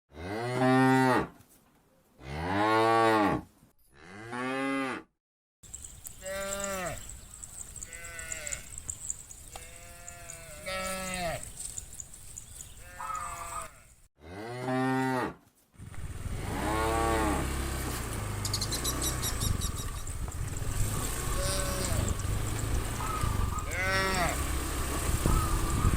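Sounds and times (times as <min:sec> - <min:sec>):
cattle mooing: 0:06.2 - 0:11.5, 0:12.8 - 0:15.3, 0:21.1 - 0:22.3, 0:23.0 - 0:25.2.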